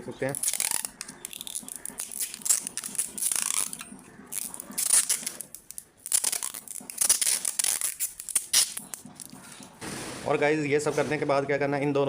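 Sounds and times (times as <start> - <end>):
adhesive tape pulled off roll: 0.3 - 9.4.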